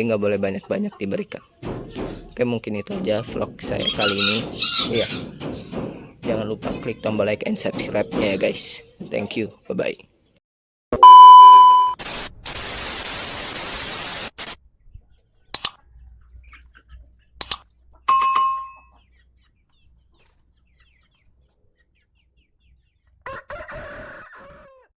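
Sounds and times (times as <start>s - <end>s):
burst of hiss: 12.0s - 14.6s
sharp clicks: 15.6s - 15.8s, 17.4s - 17.6s
ringing bell ding: 18.1s - 18.9s
rooster crowing: 23.2s - 24.9s.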